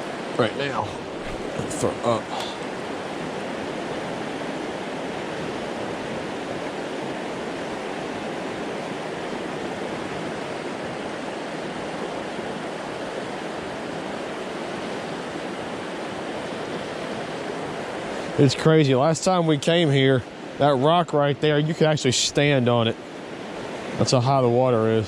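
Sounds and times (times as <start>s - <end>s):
river rushing over rocks: 0.0s - 25.0s.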